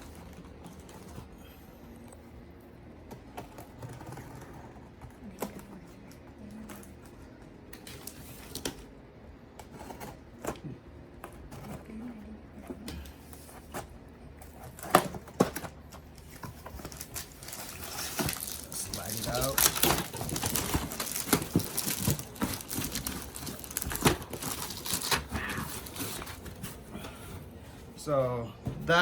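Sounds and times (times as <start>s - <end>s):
packaging rustling: 13.3s - 28.1s.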